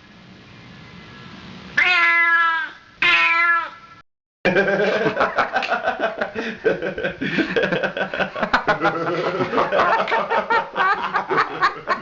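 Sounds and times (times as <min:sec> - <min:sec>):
cat meowing: 0:01.8 - 0:03.8
choppy chuckling laughter: 0:04.5 - 0:12.0.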